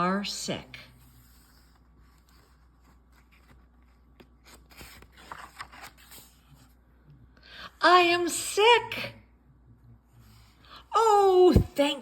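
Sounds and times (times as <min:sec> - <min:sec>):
paper book rustling and clicking: 0:01.2 - 0:06.5.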